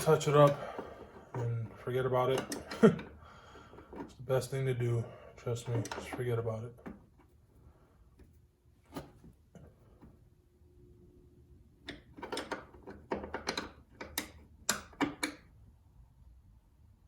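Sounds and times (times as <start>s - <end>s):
sharp clicks and light knocks: 0.0s - 4.2s, 5.6s - 7.4s, 11.8s - 15.5s.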